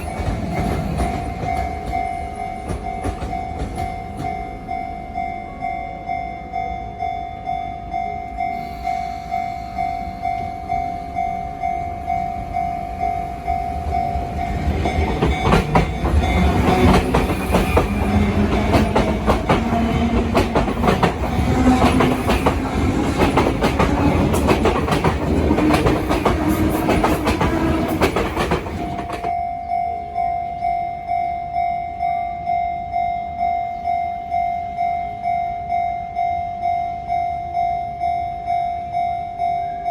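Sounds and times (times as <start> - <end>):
train wheels clacking on rails: 0.0 - 4.8, 12.5 - 29.4
train motor whine: 13.2 - 29.2.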